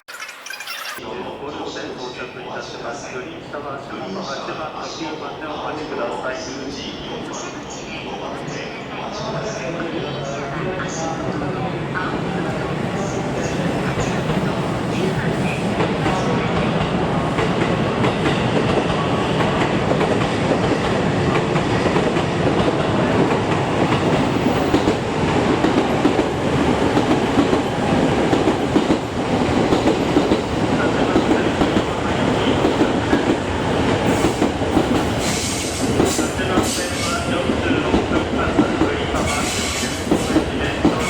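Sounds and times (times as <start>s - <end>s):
train wheels clattering over rails: 15.4s - 41.0s.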